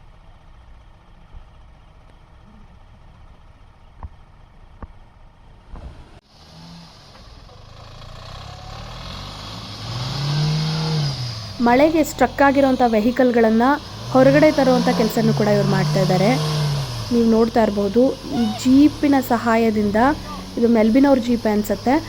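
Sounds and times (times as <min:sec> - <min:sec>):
vehicle engine revving: 0:06.0 - 0:22.0
hiss: 0:13.8 - 0:17.4.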